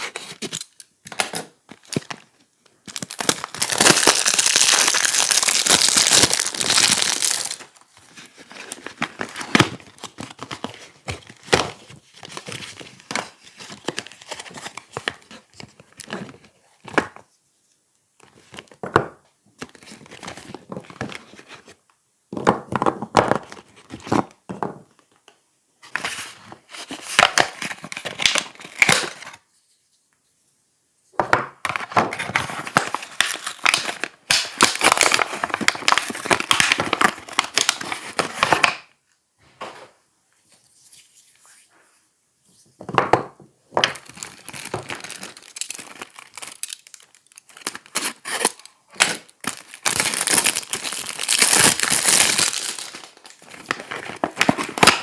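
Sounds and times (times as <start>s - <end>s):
packaging crinkling and tearing: 0.0s - 16.4s, 26.8s - 29.4s, 32.2s - 38.8s, 43.8s - 55.0s.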